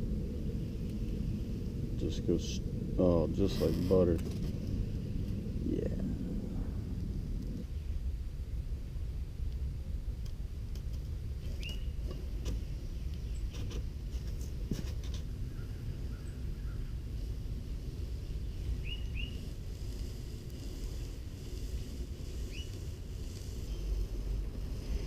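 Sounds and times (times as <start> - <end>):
wind rumbling on microphone: 0.0 - 25.0
bird chirping: 11.5 - 12.0, 18.4 - 19.5, 22.5 - 22.8.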